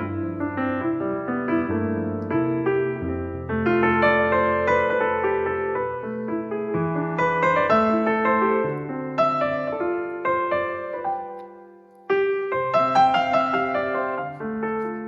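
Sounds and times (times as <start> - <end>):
gentle piano music: 0.0 - 15.0.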